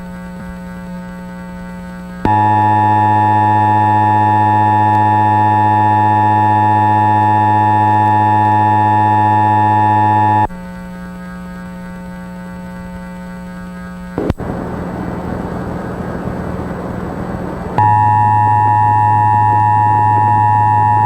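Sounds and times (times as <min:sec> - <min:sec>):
low steady buzz: 0:00.4 - 0:10.5, 0:11.1 - 0:21.0
two-tone electronic alarm: 0:02.3 - 0:10.5, 0:14.2 - 0:21.0.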